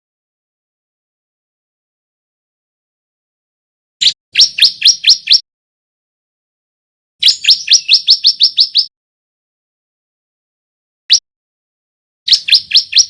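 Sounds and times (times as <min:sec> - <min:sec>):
bird singing rising chirps: 0:07.2 - 0:08.9, 0:12.3 - 0:13.0.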